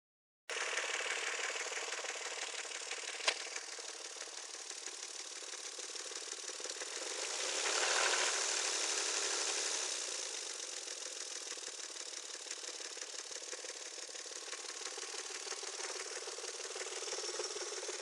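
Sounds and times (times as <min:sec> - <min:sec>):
engine knocking: 0:00.5 - 0:18.0
sharp click: 0:03.2 - 0:03.6.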